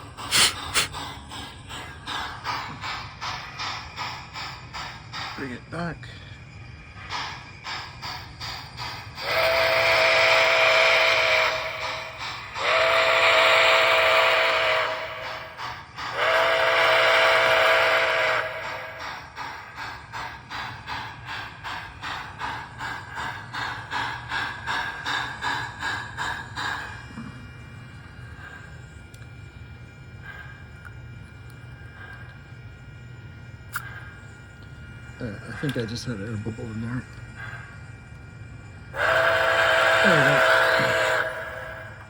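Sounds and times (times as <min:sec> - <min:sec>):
steam engine chuffing: 0:00.0 - 0:32.7, 0:33.6 - 0:42.0
hissy steam whistle blasts: 0:09.2 - 0:19.3, 0:38.9 - 0:42.0.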